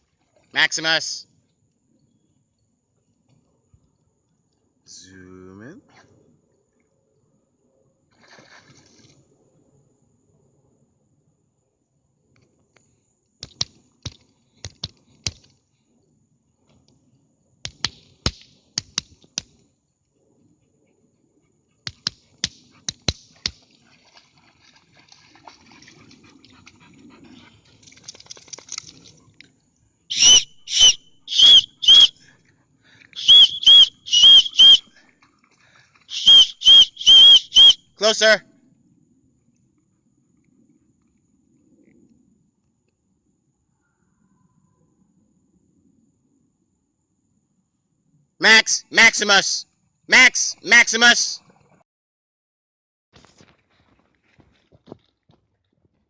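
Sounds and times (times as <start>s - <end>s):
short high whistle blasts: 30.1s - 32.2s, 33.2s - 34.9s, 36.1s - 37.8s.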